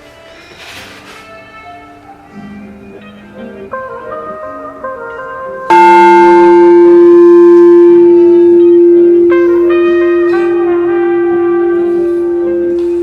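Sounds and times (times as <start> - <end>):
background music: 0.0 - 13.0
singing bowl ringing: 4.3 - 13.0.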